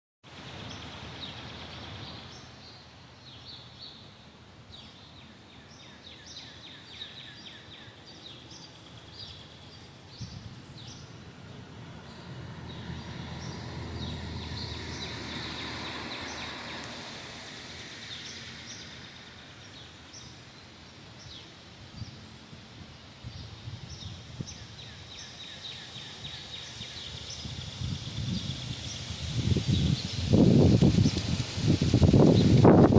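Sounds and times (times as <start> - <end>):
outdoor background rush: 0.3 - 32.9
birds chirping: 4.8 - 22.2, 23.3 - 32.9.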